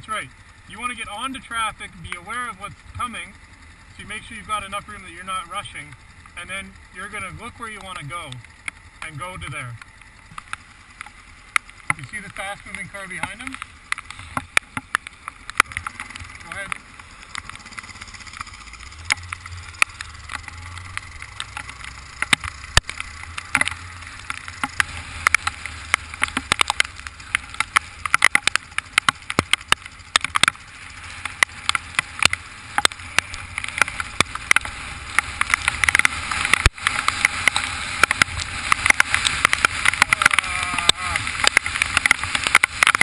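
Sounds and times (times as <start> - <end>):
motorcycle engine drone: 0.0 - 43.0
raindrops tapping microphone: 0.0 - 43.0
rushing rain and wind: 13.5 - 43.0.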